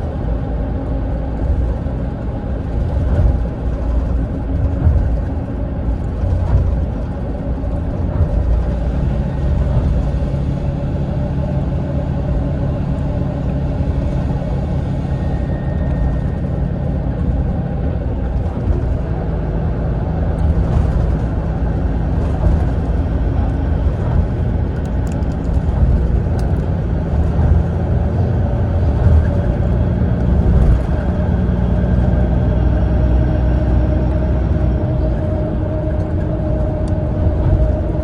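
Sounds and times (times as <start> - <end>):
bus engine drone: 0.0 - 38.0
road rumble: 0.0 - 38.0.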